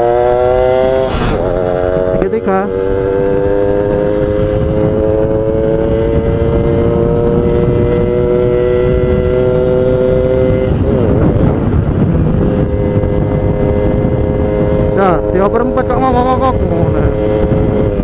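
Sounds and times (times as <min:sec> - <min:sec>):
two-stroke motorcycle engine revving: 0:00.0 - 0:18.0.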